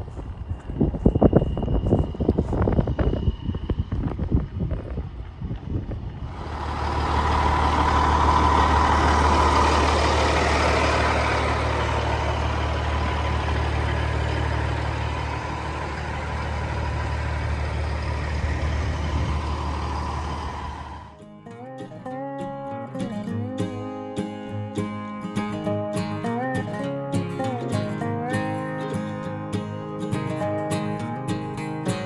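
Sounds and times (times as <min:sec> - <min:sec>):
truck diesel engine humming: 0:06.0 - 0:21.2.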